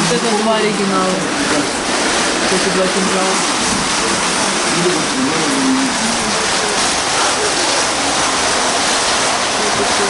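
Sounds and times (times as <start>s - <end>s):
person's voice: 2.4s - 7.8s.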